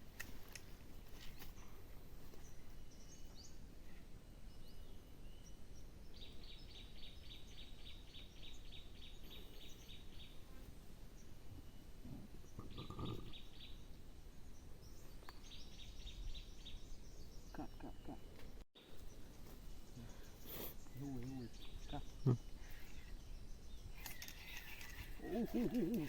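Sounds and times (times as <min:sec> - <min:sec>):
low background hiss: 0:00.0 - 0:12.6
bird chirping: 0:04.5 - 0:26.0.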